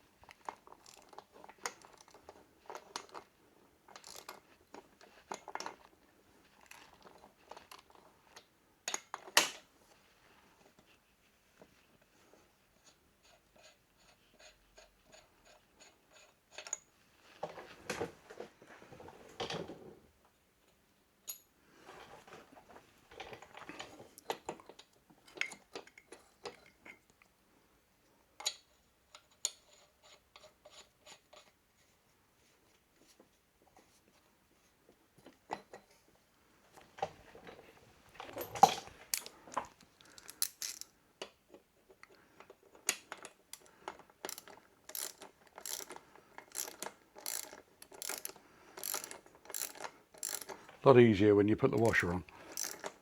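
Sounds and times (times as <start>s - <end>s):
metal tools clicking and tapping: 38.3s - 40.9s, 42.8s - 50.6s, 52.5s - 53.0s.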